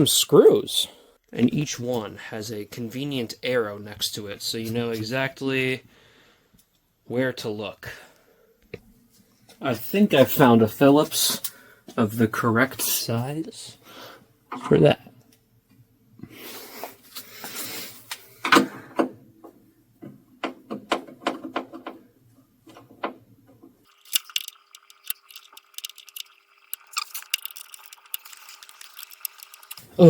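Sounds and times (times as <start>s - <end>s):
rapid small ticks: 24.0s - 29.8s
screwdriver clicking and scraping screws: 24.0s - 29.8s.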